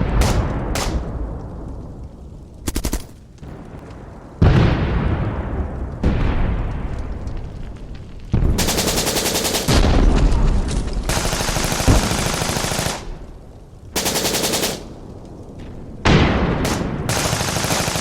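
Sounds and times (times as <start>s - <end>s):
echoing gunshot: 0.0s - 1.4s
machine-gun fire: 2.6s - 3.2s, 8.5s - 10.1s, 11.1s - 13.2s, 14.0s - 15.0s, 16.1s - 18.0s.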